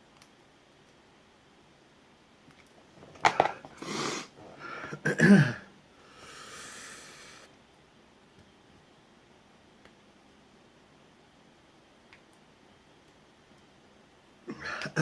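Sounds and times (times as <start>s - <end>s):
man sneezing: 3.8s - 5.7s, 14.5s - 15.0s.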